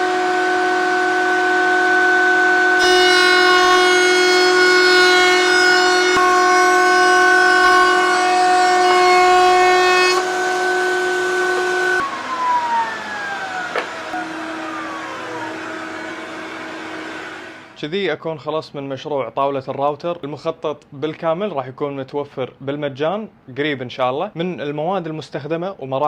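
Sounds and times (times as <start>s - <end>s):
motor winding down: 0.0s - 17.8s
router bit cutting wood: 0.0s - 17.8s
router motor whining: 0.0s - 17.8s.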